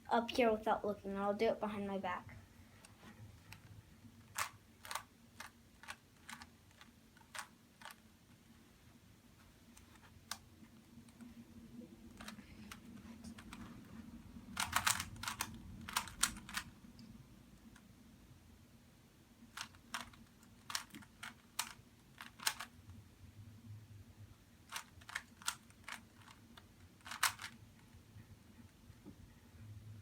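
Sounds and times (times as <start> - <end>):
plastic puzzle cube clicking: 3.4 - 8.0, 12.1 - 13.6, 14.5 - 16.7, 19.5 - 22.7, 24.7 - 27.6.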